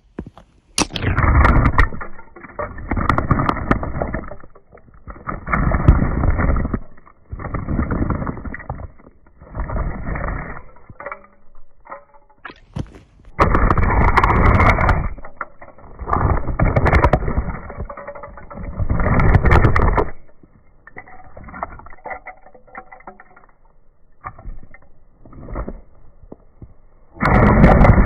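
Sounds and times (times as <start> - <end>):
small fragments crunching: 0.0 - 26.5
shoe scraping plastic on asphalt: 4.9 - 10.6, 12.5 - 15.2.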